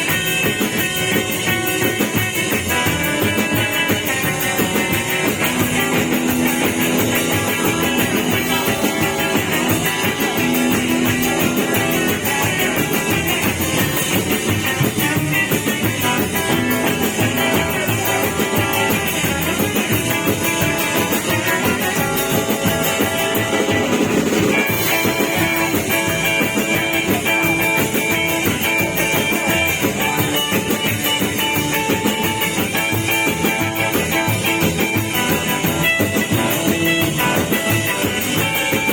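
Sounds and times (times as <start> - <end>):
rock band music: 0.0 - 38.9.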